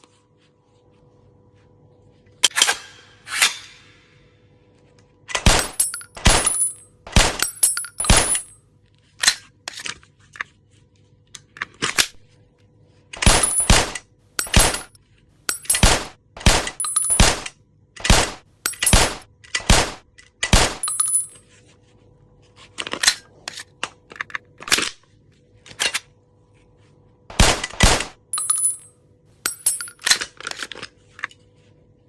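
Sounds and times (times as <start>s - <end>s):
pistol gunshots: 13.2s - 14.9s, 15.7s - 17.5s, 18.1s - 20.9s, 27.3s - 28.2s
metallic clacks: 14.4s - 15.9s.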